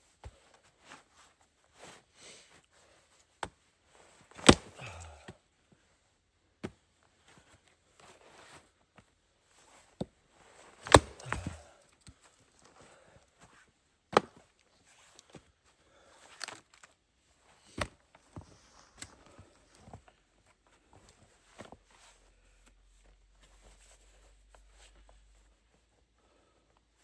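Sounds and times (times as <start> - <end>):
axe chopping wood: 4.4 - 5.2, 10.8 - 11.7, 14.1 - 14.4.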